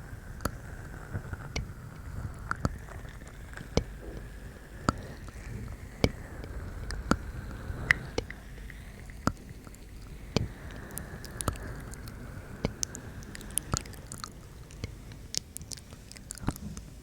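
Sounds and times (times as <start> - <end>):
wet mouth clicks and lip smacks: 8.1 - 16.7.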